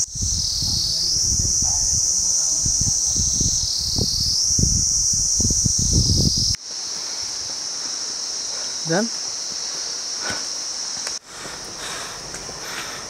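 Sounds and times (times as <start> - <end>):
low rumbling on microphone: 0.0 - 6.6
insects chorus: 0.0 - 13.0.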